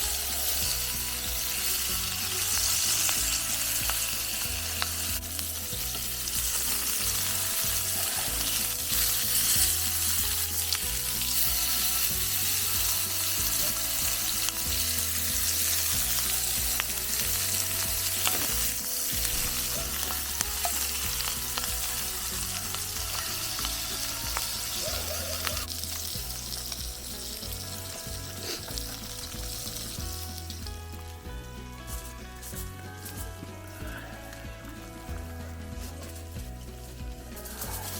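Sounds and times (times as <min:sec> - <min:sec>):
food sizzling in a pan: 0:00.0 - 0:37.9.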